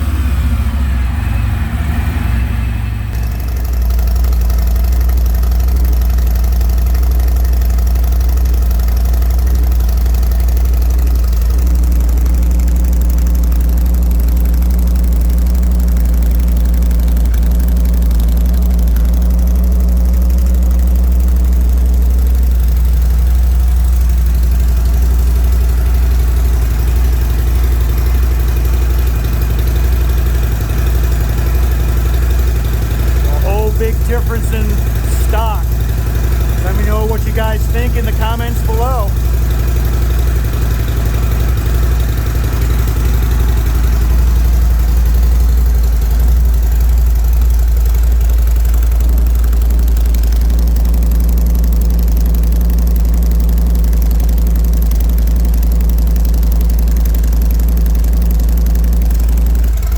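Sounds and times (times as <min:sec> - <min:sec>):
motorcycle engine idling: 0:00.0 - 0:59.9.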